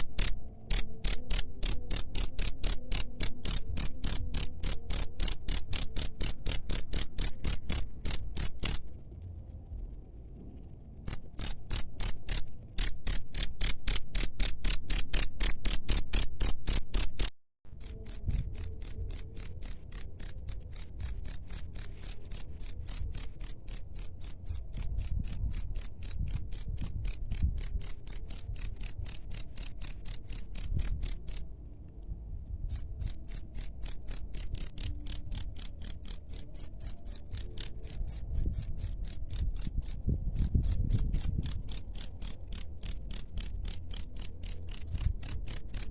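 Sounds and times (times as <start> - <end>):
cricket chirping: 0.0 - 45.9.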